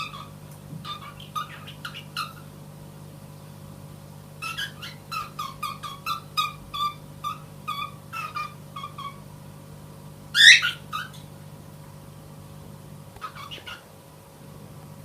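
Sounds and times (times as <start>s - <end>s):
pet animal high-pitched calls: 0.0s - 2.5s, 4.4s - 9.2s, 10.3s - 11.2s, 13.2s - 13.9s
steady low hum: 0.0s - 15.0s.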